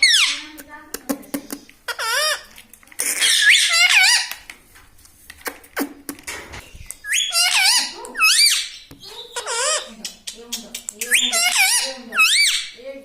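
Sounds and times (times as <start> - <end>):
parrot squeaky warbling calls: 0.0 - 0.5, 1.9 - 4.4, 7.0 - 12.8.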